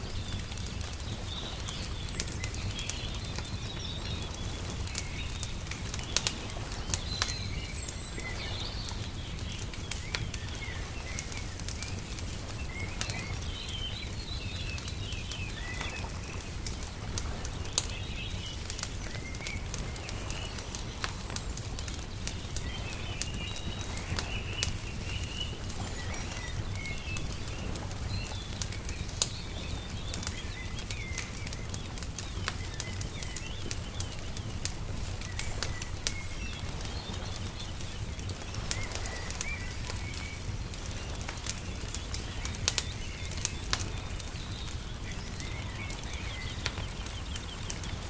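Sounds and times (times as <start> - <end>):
small birds chirping: 0.0 - 48.0
wood fire crackling and popping: 0.0 - 48.0.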